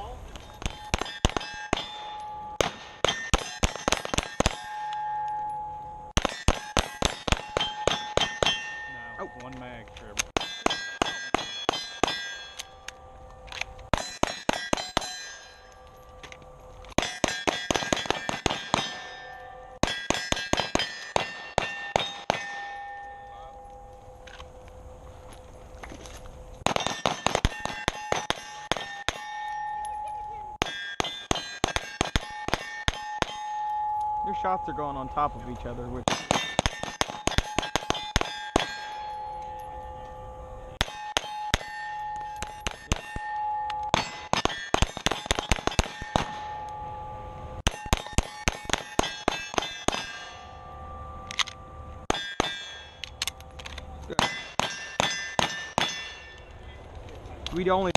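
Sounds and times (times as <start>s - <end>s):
steel targets ringing: 0.0s - 24.2s, 26.1s - 56.8s
pistol shots: 0.6s - 4.9s, 6.2s - 8.8s, 17.0s - 22.8s, 26.6s - 29.5s, 30.6s - 33.5s, 36.0s - 39.0s, 40.8s - 46.5s, 47.6s - 50.4s, 54.1s - 56.4s.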